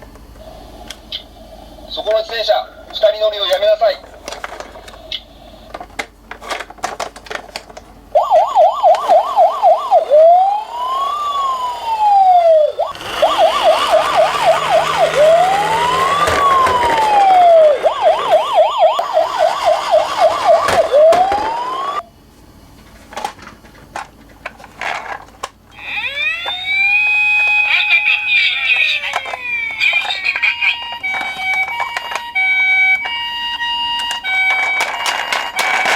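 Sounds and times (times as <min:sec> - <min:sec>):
plastic clicks and rattles: 0:05.7 - 0:07.9, 0:34.0 - 0:35.9
fainter second siren: 0:08.2 - 0:22.1, 0:25.7 - 0:35.9
toy electronic siren: 0:08.2 - 0:22.1, 0:25.7 - 0:35.9.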